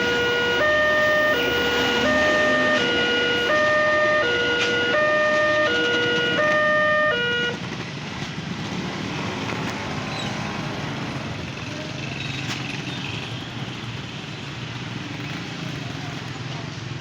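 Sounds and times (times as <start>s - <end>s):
two-tone level crossing siren: 0.0s - 7.6s
road traffic noise: 0.0s - 17.0s.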